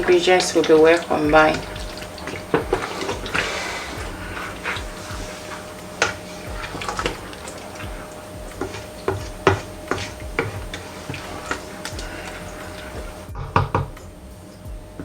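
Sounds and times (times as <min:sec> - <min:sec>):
spoon scraping a pot: 0:00.0 - 0:13.9.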